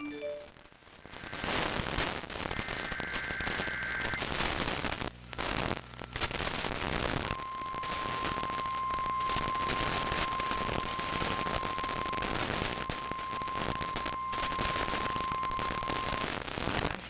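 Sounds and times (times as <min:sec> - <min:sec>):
long steady alert tone: 0:00.0 - 0:00.5
crackling radio static: 0:00.6 - 0:17.0
two-tone data warble: 0:07.2 - 0:16.4.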